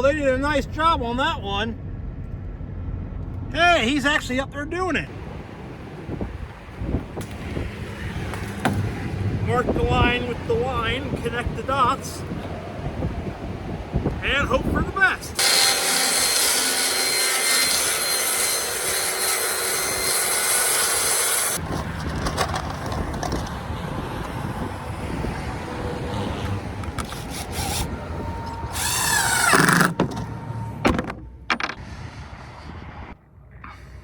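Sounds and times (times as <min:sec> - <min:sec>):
power saw cutting wood: 0:15.4 - 0:21.6, 0:26.1 - 0:27.9, 0:28.6 - 0:30.0.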